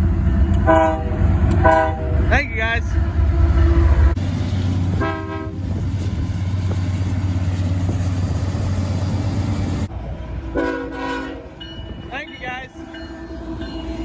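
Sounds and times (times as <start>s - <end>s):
passing train rumble: 0.0s - 14.0s
locomotive air horn blast: 0.6s - 2.2s, 5.0s - 5.6s, 10.5s - 11.6s.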